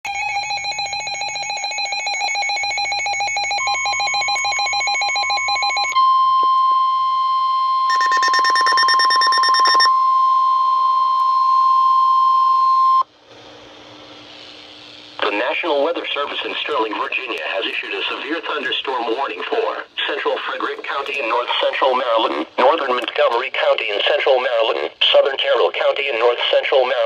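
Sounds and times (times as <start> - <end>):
steady warning alarm tone: 0.1 - 13.0
rapid pulsing electronic beeps: 7.9 - 9.9.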